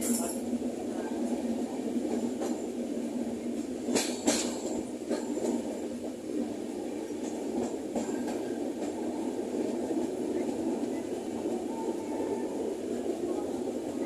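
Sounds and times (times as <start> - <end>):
train wheels rumbling on track: 0.0 - 14.0
light track clicks: 3.8 - 5.7.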